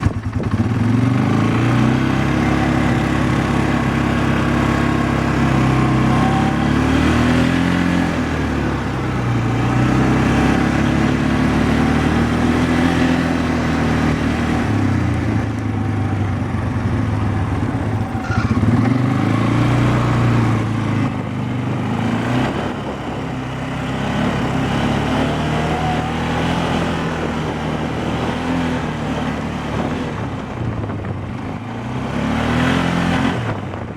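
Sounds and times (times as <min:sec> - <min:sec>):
engine knocking: 0:00.0 - 0:01.1
atv engine revving: 0:00.0 - 0:33.9.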